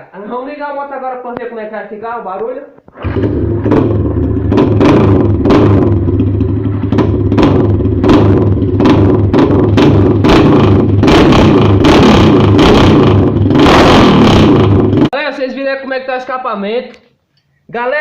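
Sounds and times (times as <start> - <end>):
motorcycle engine revving: 2.9 - 15.2.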